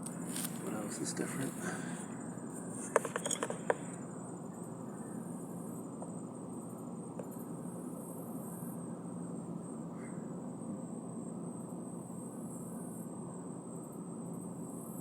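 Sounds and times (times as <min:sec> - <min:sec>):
faint high whine: 0:00.0 - 0:15.0.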